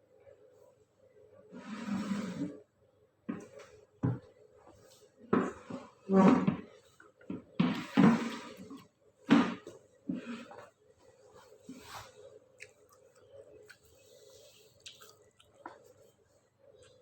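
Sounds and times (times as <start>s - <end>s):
soft mouth sounds: 12.5s - 16.1s
noisy eating of noodles: 12.5s - 17.0s.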